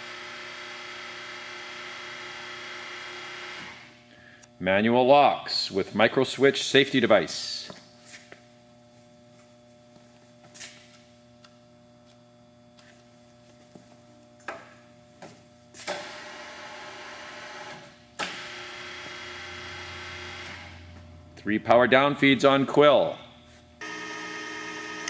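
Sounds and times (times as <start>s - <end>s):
drill electric motor running: 23.8s - 25.0s.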